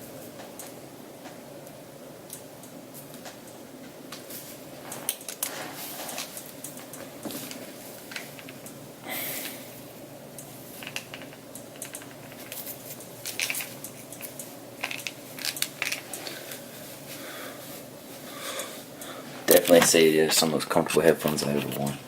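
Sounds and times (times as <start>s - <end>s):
headphones rustling: 4.2s - 8.6s, 10.6s - 20.0s
headphones clicking: 10.8s - 16.7s.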